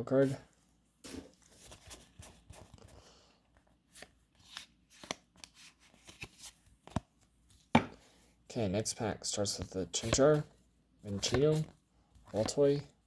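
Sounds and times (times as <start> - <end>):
trading cards flipped by hand: 3.6 - 7.8, 9.6 - 10.4, 11.1 - 11.7.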